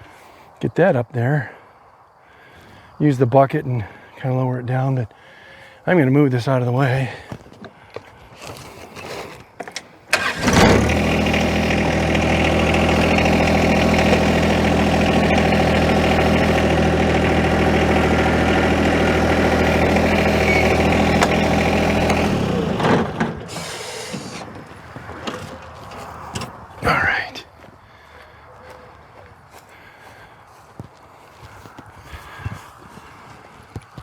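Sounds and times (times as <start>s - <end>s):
tractor diesel engine idling: 10.1s - 27.3s.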